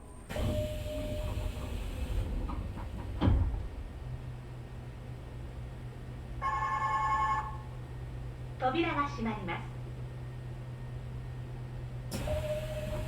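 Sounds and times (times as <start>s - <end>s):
train door chime: 0.0s - 1.6s, 6.4s - 7.6s
low train hum: 0.0s - 13.0s.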